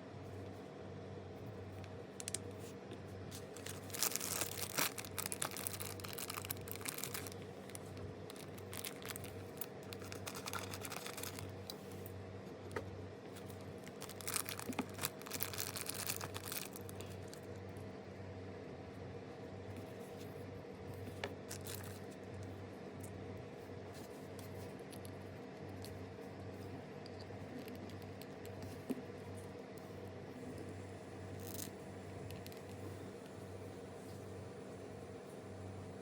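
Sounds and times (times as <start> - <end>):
steady low hum: 0.0 - 36.0
plastic wrapping crinkling: 3.3 - 12.0, 13.3 - 17.4, 21.5 - 22.0, 31.4 - 32.8.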